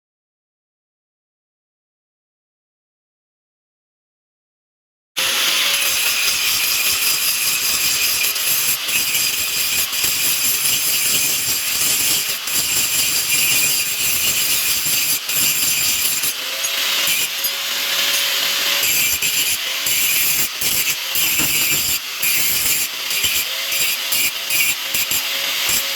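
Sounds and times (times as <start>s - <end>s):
steel grinding rasp: 5.2s - 25.9s.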